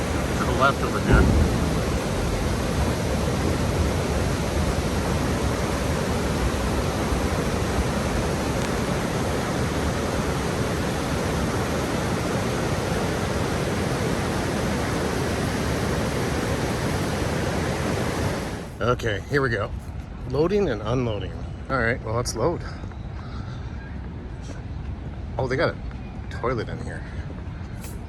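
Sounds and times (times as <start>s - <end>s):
waterfall roaring: 0.0s - 18.8s.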